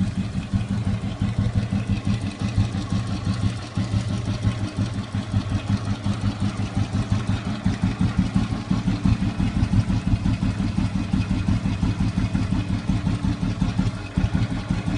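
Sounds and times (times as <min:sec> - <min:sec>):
motorcycle engine idling: 0:00.0 - 0:14.9.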